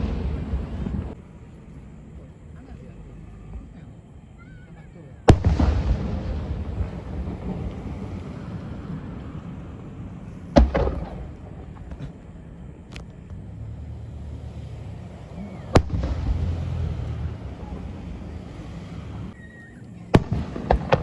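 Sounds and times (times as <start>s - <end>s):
fireworks bangs with echo: 0.0s - 1.2s, 5.3s - 12.2s, 15.1s - 18.7s, 20.1s - 21.0s.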